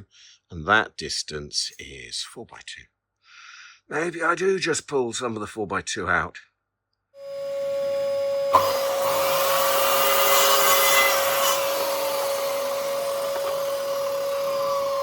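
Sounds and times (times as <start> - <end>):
power saw whining: 7.2 - 15.0
saw cutting timber: 7.2 - 15.0.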